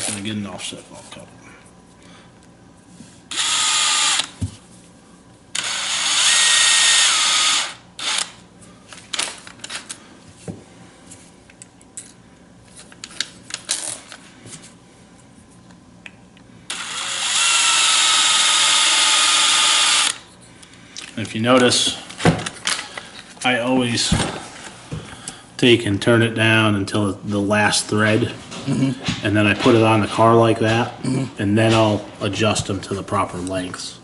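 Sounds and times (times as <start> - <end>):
small drill whining: 3.3 - 4.4, 5.5 - 8.4, 16.7 - 20.2.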